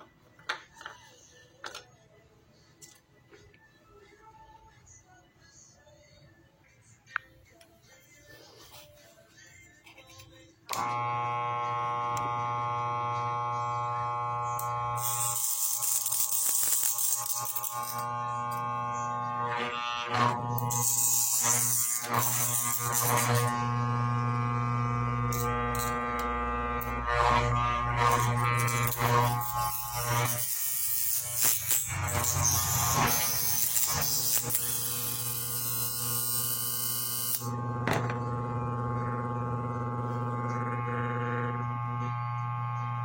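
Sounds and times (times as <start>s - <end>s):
armature tester humming: 10.7s - 43.0s
steel strip buzzing rattle: 12.0s - 38.4s.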